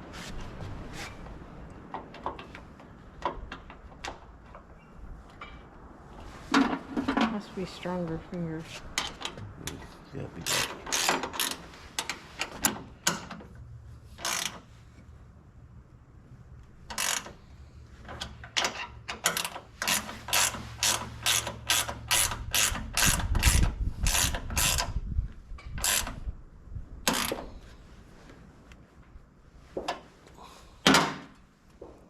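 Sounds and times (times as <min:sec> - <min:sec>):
ratchet wrench clicking: 0:10.4 - 0:11.6, 0:14.2 - 0:14.6, 0:16.9 - 0:17.4, 0:18.6 - 0:24.9, 0:25.8 - 0:26.2.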